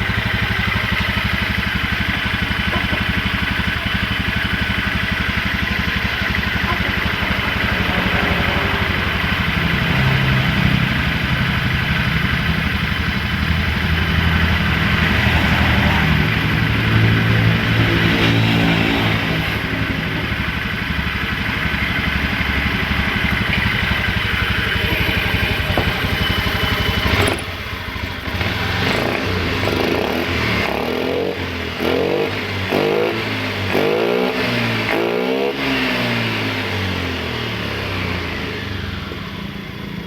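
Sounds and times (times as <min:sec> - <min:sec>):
scooter engine revving: 0:00.0 - 0:40.0.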